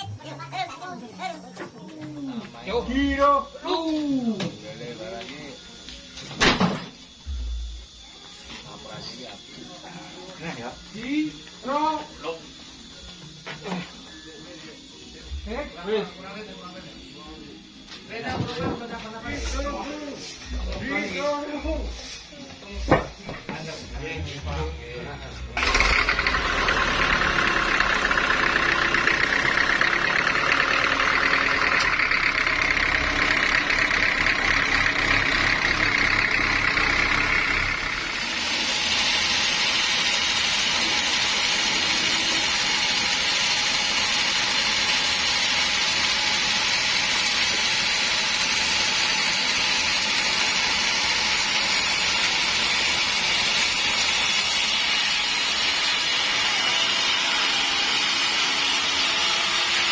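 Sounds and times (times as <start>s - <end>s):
steady machine whine: 0.0s - 59.9s
sawmill machinery rumbling: 25.4s - 59.9s.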